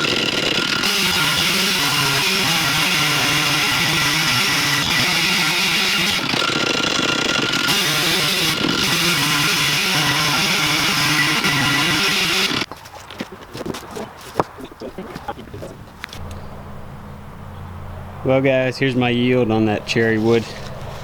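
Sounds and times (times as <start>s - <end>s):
chainsaw ripping log: 0.0s - 16.3s.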